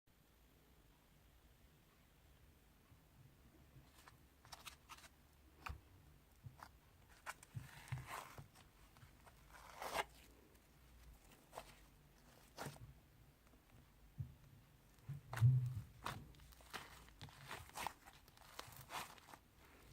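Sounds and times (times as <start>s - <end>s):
plastic crinkling rustles: 15.9s - 19.9s.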